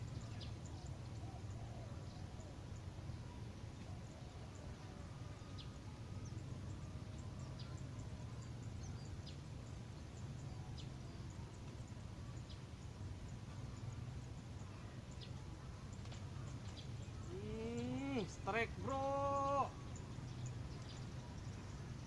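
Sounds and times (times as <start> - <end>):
faint low rumble: 0.0 - 18.5
bird chirping: 0.0 - 22.0.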